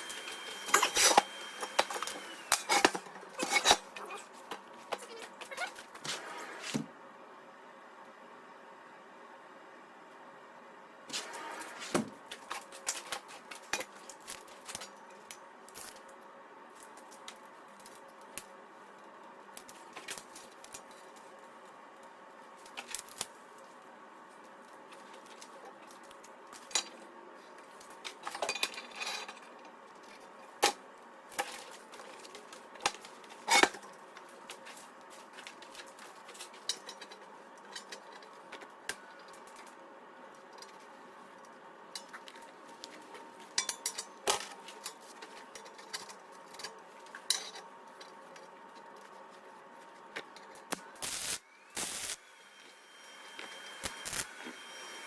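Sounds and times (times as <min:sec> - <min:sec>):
metal tools clinking and knocking: 0:43.5 - 0:48.5.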